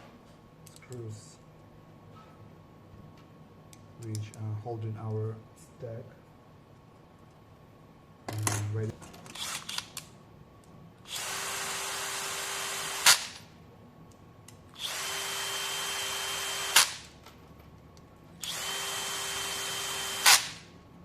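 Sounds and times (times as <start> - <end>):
power driver driving screws: 9.3 - 10.0, 11.1 - 13.4, 14.8 - 17.0, 18.4 - 20.6.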